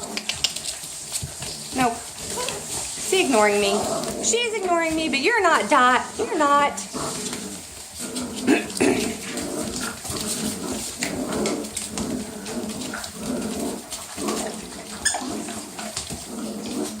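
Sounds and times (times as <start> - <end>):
puppies whimpering and yipping: 12.6 - 16.2.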